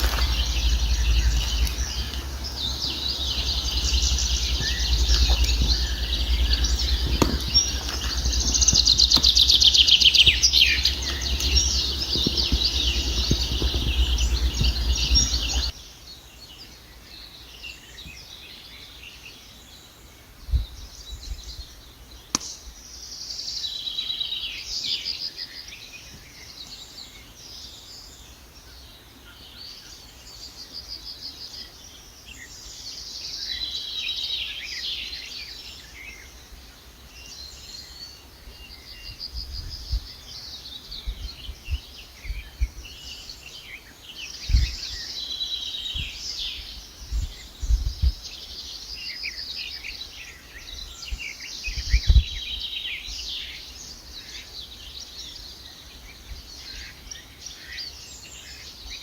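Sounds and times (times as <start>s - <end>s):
sharp pops: 0.0s - 15.7s
steady low rumble: 0.0s - 15.8s
songbirds singing and trilling: 0.0s - 59.0s.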